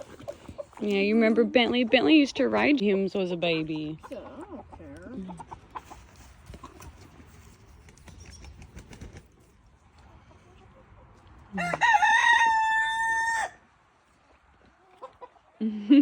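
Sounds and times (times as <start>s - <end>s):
rooster crowing: 11.6s - 13.6s.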